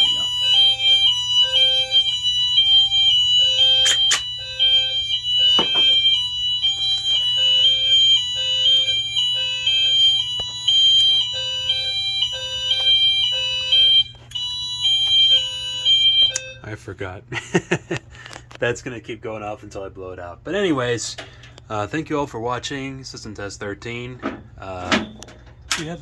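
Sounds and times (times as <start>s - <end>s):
hi-lo fire alarm horn: 0.0s - 16.7s.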